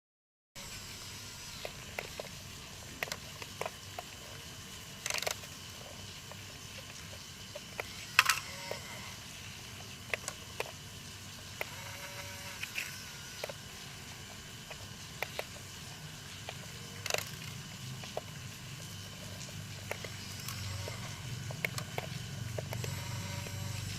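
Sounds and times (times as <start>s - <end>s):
toy excavator motor humming: 0.6s - 23.9s
clicks and knocks of small parts: 5.0s - 8.9s, 16.4s - 18.4s.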